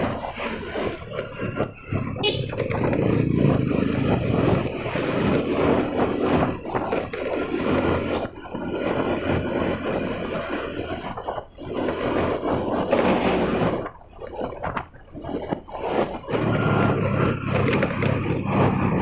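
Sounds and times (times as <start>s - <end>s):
road and wind noise: 0.0s - 19.0s
vehicle engine running: 16.2s - 19.0s.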